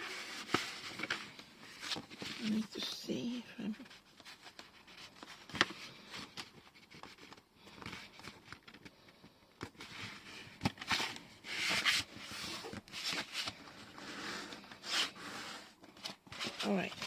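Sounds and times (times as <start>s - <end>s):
paper rustling and sliding: 0.0s - 2.6s, 9.7s - 17.0s.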